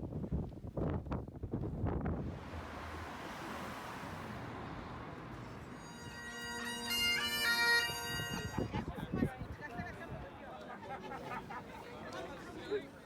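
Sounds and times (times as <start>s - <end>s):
bagpipes playing: 5.4s - 8.7s.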